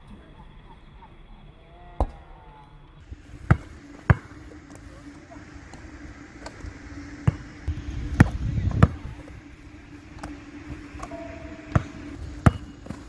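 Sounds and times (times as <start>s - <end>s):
steady low hum: 0.0s - 13.0s
basketball bouncing: 3.4s - 5.8s, 11.7s - 13.0s.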